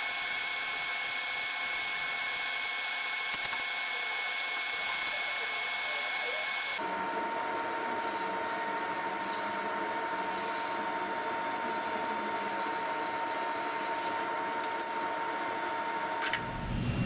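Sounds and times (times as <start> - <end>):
lower loud sound: 16.4 - 17.0.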